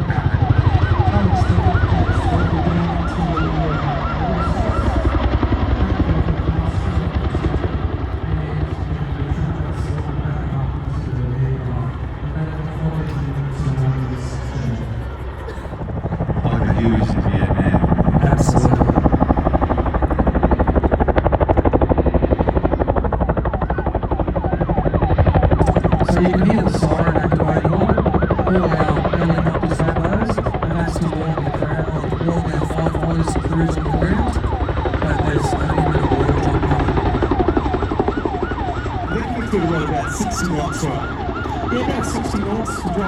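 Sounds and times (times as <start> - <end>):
yelping warning siren: 0.0 - 13.0, 13.6 - 43.0
helicopter rotors beating: 0.0 - 43.0.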